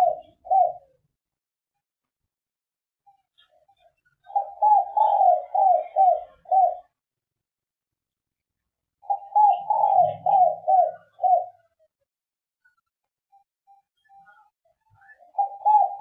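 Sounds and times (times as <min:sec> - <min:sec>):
dove cooing: 0:00.0 - 0:01.0, 0:04.2 - 0:07.0, 0:09.0 - 0:11.7, 0:15.2 - 0:16.0.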